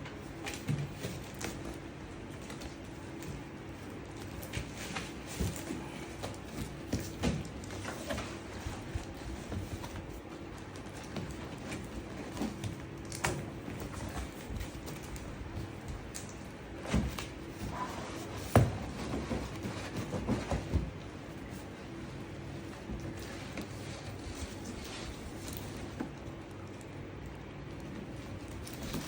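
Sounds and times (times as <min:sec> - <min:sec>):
objects knocking and rustling: 0:00.3 - 0:26.4.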